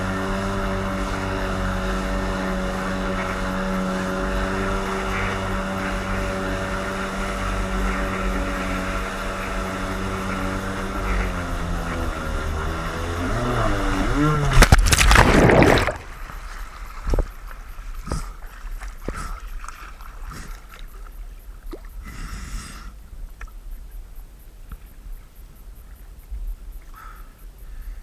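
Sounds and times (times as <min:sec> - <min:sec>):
loud rush of splashing: 0:00.0 - 0:20.8
boat knocks and splashes: 0:00.0 - 0:22.0
powerboat engine passing: 0:00.0 - 0:23.0.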